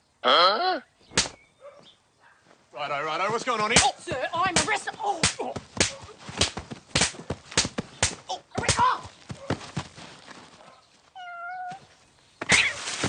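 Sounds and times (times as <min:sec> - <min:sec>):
rapid sharp slaps: 0:01.1 - 0:01.4, 0:03.4 - 0:09.1.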